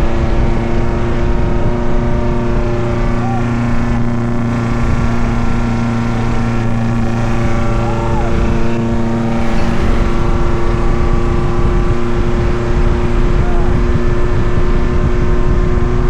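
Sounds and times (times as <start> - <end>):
car engine running off-road: 0.0 - 16.0.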